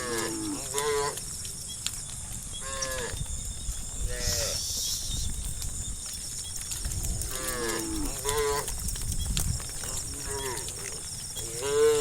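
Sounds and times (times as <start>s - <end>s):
cows mooing: 0.0s - 1.2s, 7.1s - 8.8s, 9.8s - 12.0s.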